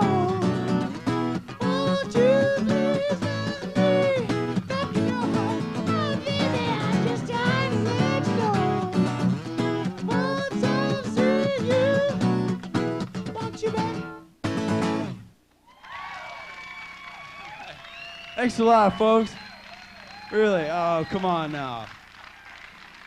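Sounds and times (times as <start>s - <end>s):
fast acoustic guitar playing: 0.0s - 15.4s.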